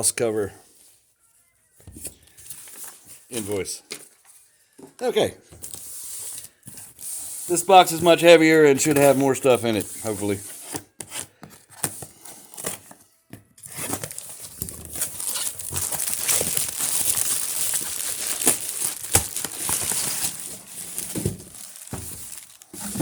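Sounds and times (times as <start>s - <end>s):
packing material rustling: 13.6s - 23.0s.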